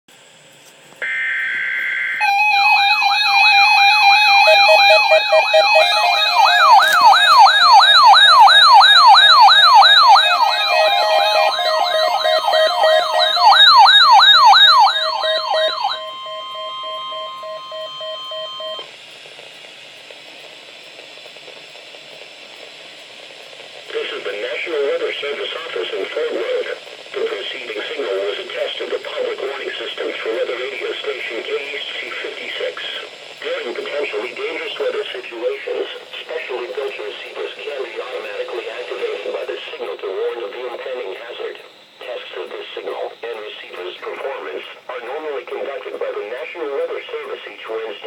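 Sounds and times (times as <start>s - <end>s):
burst of data tones: 1.0s - 18.9s
rising and falling alarm wails: 1.0s - 18.9s
steady alert tone: 1.0s - 18.9s
faint radio hiss: 23.9s - 48.0s.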